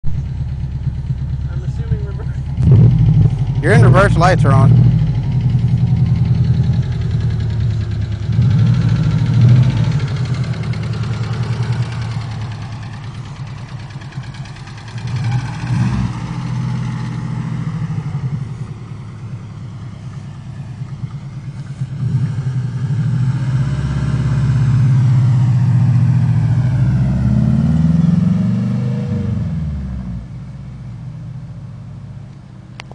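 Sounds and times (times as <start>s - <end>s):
engine lifter ticking: 0.0s - 22.0s
car engine revving: 0.0s - 32.9s.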